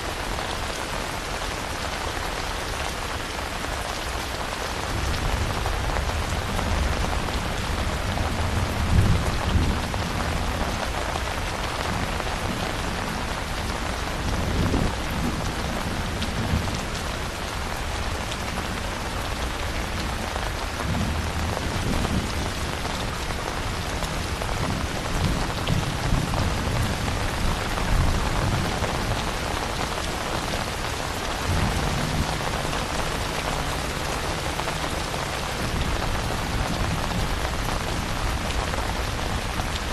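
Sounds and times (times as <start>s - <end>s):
dense rainfall: 0.0s - 39.9s.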